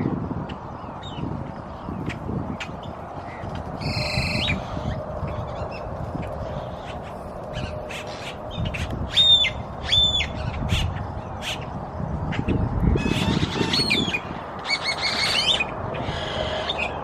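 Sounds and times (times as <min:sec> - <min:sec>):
high squeaky bird calls: 0:02.0 - 0:11.7, 0:12.3 - 0:17.0
bird harsh squawk: 0:06.4 - 0:11.7, 0:13.0 - 0:17.0.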